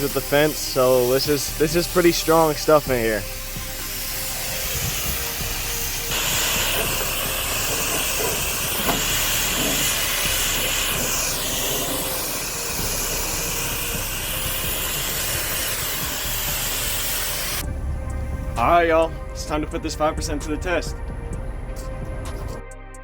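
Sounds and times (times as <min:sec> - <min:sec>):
liquid hissing from spray nozzle: 0:00.0 - 0:17.6.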